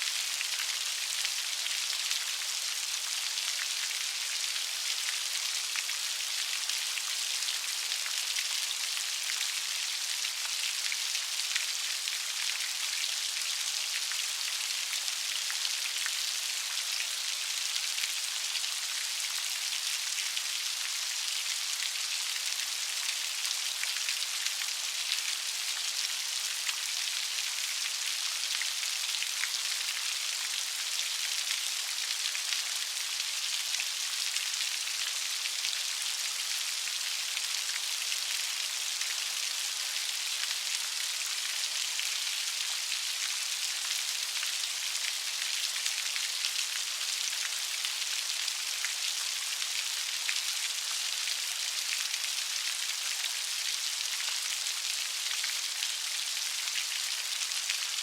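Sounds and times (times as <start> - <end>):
light rain pattering: 0.0 - 58.0.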